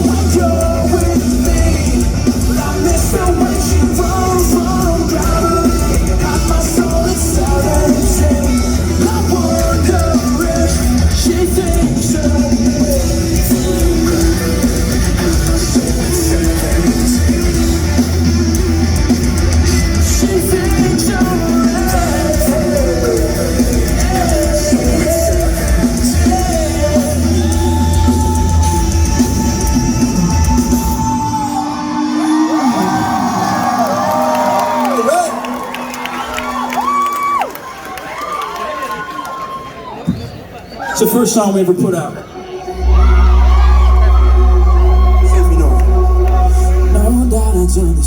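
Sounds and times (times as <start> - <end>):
drum kit: 0.0 - 35.5
person singing: 0.0 - 35.5, 42.4 - 48.0
distorted electric guitars: 0.0 - 37.0, 42.3 - 48.0.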